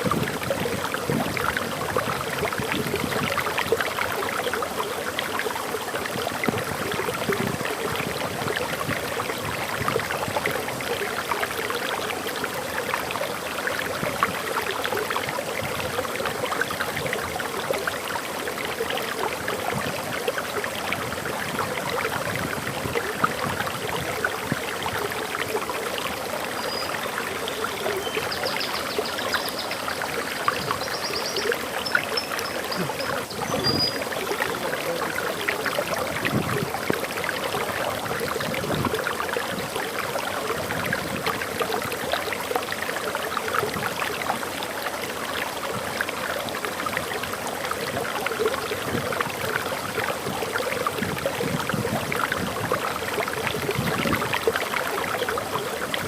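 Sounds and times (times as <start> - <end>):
waterfall rushing: 16.2 - 56.0.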